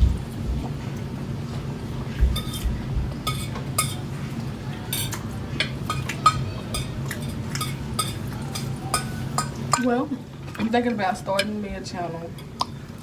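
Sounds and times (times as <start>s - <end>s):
fork clinking on plate: 4.9s - 9.9s.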